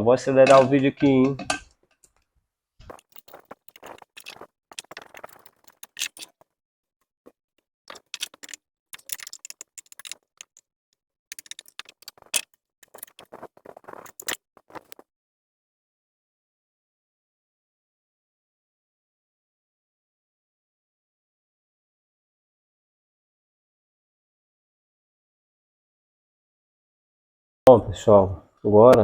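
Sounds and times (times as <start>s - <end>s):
parts clicking and rattling: 2.8s - 6.4s, 7.9s - 10.6s, 11.3s - 15.0s.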